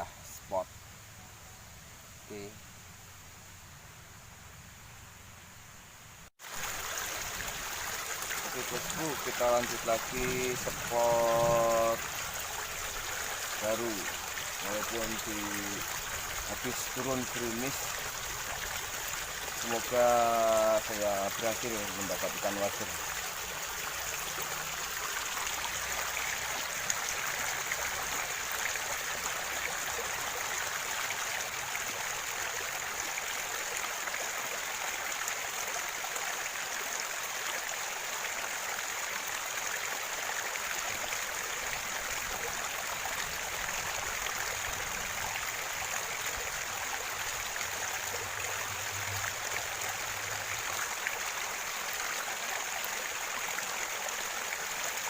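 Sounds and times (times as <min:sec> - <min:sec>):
river water flowing: 0:00.0 - 0:55.0.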